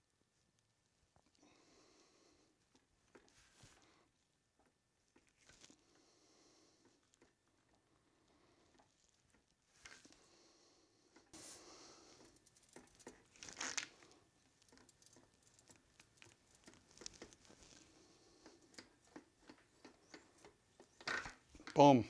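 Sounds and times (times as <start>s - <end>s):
small clicks and rustles on sheet metal: 11.3s - 17.8s, 18.4s - 21.9s.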